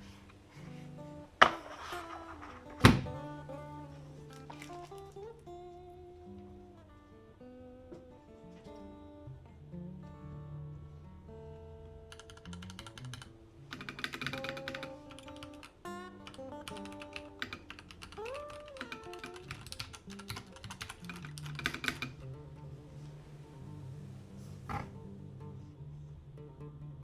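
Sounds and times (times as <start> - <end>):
acoustic guitar music: 0.0 - 27.0
mechanical keyboard key clicks: 12.2 - 15.7, 16.3 - 22.1.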